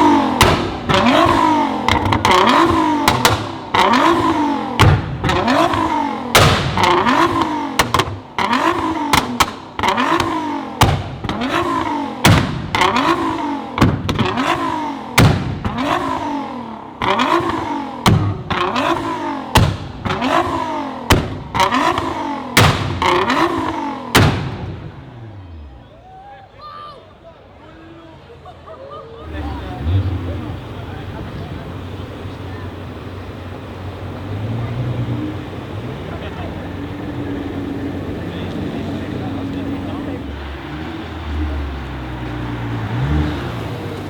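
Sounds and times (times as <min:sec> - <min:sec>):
exhaust pops and bangs: 0:00.0 - 0:25.4
car engine revving in blips: 0:00.0 - 0:26.0, 0:29.2 - 0:44.0.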